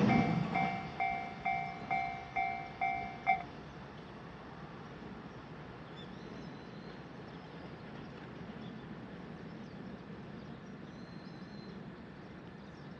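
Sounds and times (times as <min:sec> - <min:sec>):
steady low rumble: 0:00.0 - 0:03.4.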